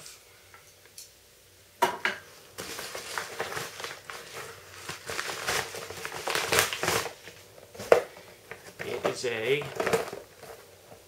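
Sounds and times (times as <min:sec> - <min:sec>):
packaging rustling and crinkling: 0:02.4 - 0:11.0.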